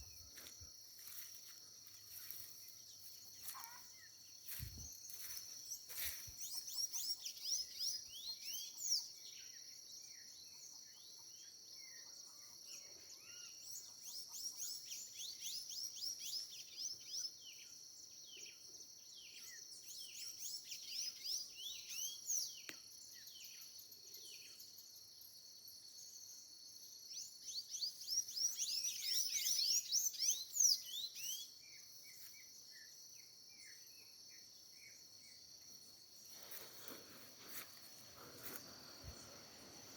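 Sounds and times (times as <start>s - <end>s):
crickets droning: 0.0s - 39.9s
birds chirping: 36.4s - 39.9s.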